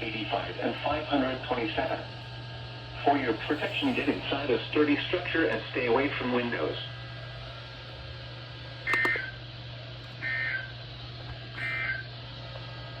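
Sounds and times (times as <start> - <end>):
steady low hum: 0.0 - 13.0
screeching data tone bursts: 10.2 - 10.8, 11.6 - 12.1.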